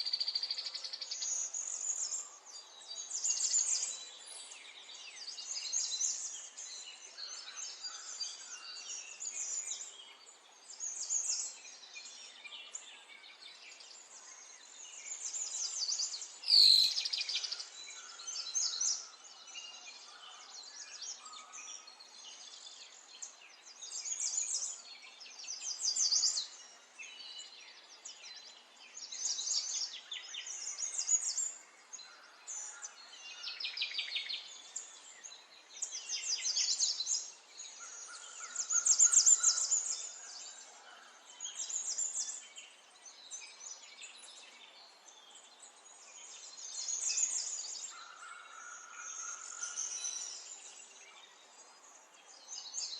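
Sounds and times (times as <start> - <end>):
faint outdoor background: 0.0 - 52.9
songbirds chirping and trilling: 0.0 - 52.9.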